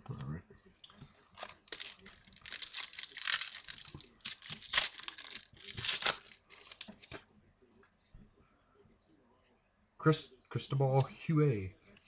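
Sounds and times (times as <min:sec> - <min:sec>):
foil wrapper tearing and crinkling: 0:01.4 - 0:07.2.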